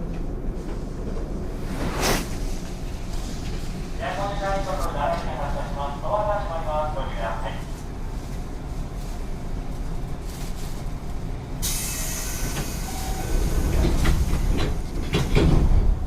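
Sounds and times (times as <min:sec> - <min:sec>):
electric train rumbling: 0:00.0 - 0:16.0
wheels clacking over rail joints: 0:13.4 - 0:16.0.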